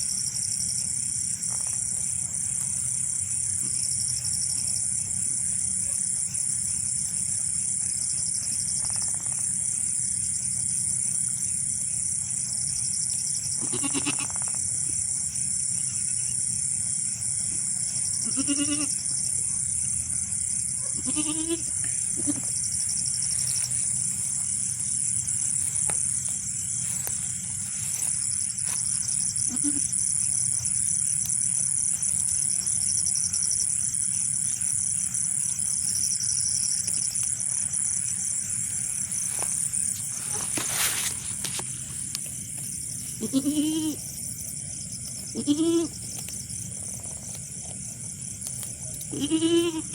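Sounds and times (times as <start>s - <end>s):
goats bleating: 13.6s - 14.3s, 18.2s - 19.0s, 21.0s - 22.5s, 43.2s - 44.0s, 45.3s - 46.0s, 49.1s - 49.9s
steady high-pitched hiss: 21.5s - 49.9s.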